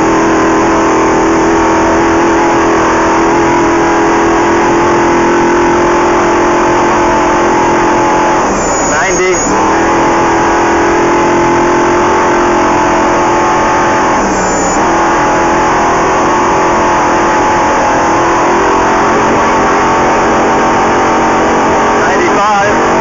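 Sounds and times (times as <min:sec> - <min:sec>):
engine running at high revs: 0:00.0 - 0:23.0
constant rushing noise: 0:12.1 - 0:23.0.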